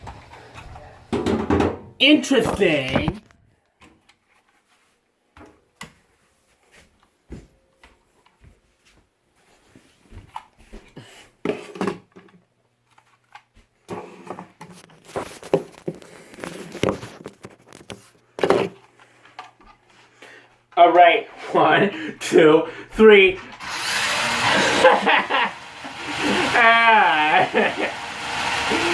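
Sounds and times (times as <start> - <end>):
child imitating car noises: 26.4 - 27.6.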